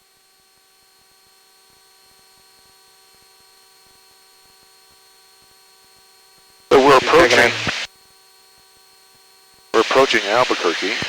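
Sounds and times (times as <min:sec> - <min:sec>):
electrical hum and whine: 0:06.7 - 0:07.9, 0:09.8 - 0:11.0
faint crackles: 0:06.7 - 0:07.9, 0:09.8 - 0:11.0.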